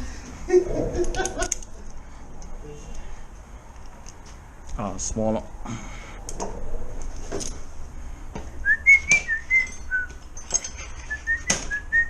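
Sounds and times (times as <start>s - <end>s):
person whistling a tune: 8.6s - 10.2s, 11.1s - 12.0s.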